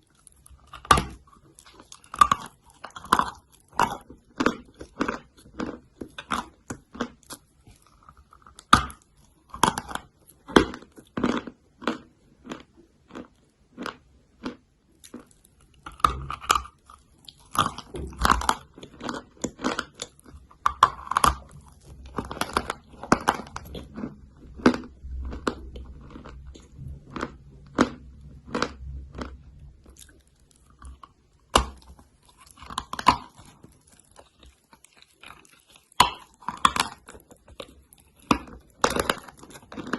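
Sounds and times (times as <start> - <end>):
chalk crunching while chewed: 0.0 - 39.9.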